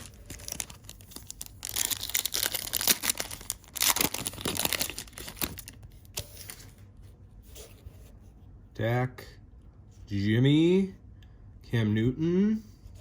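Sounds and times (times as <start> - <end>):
card pack wrapper tearing: 0.0 - 5.8.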